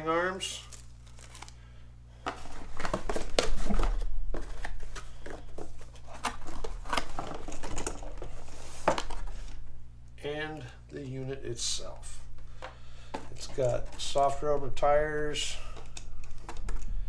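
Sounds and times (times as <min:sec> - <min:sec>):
packaging rustling and crinkling: 0:00.5 - 0:01.6, 0:02.2 - 0:09.6, 0:12.4 - 0:14.5.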